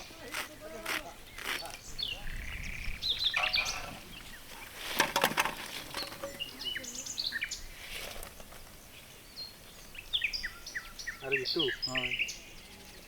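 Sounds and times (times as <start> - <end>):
small birds chirping: 0.0 - 13.0
sharp knocks or clatter: 4.6 - 6.6.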